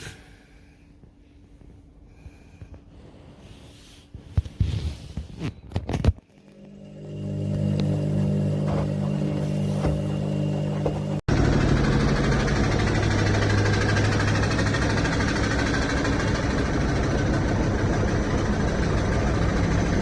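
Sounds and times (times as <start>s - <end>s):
washing machine humming: 6.3s - 20.0s.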